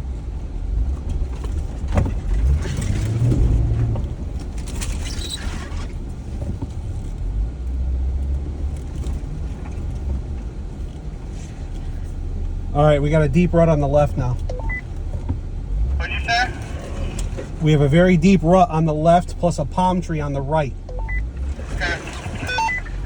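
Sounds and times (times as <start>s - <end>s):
body and suspension rattling: 0.0s - 23.0s
car engine running low: 0.0s - 23.0s.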